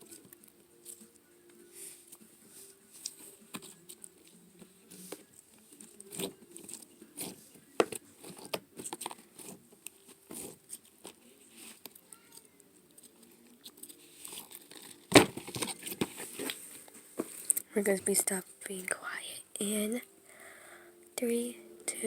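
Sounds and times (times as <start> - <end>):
slime squishing by hand: 4.6 - 17.7.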